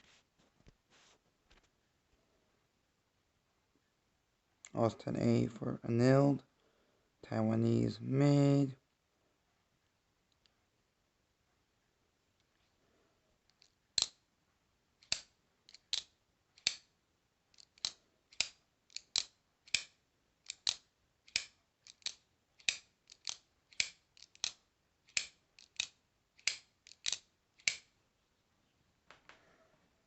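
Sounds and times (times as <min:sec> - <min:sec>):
folding knife clicking open and shut: 0:15.0 - 0:16.9, 0:17.6 - 0:27.9.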